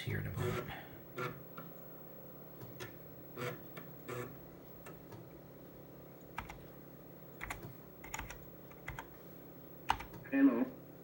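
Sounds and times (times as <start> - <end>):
computer low hum: 0.0 - 11.0
keyboard keystrokes: 6.4 - 6.6, 7.4 - 9.1, 9.9 - 10.2.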